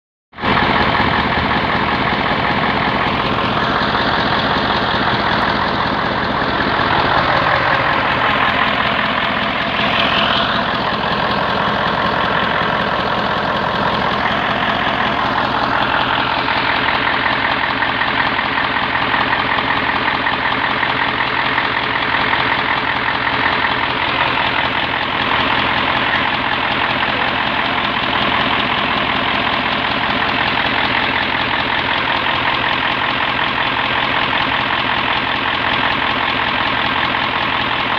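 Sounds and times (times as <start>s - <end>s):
diesel engine idling: 0.4s - 37.9s.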